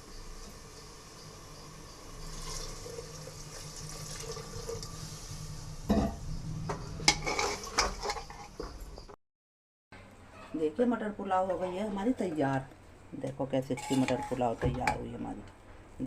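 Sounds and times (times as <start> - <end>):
water pouring into a pot: 2.2 - 5.1.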